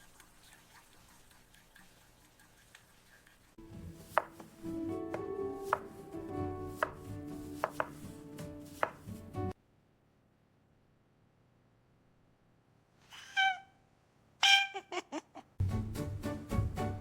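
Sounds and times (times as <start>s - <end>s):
knife chopping on cutting board: 4.1s - 6.0s, 6.7s - 9.2s.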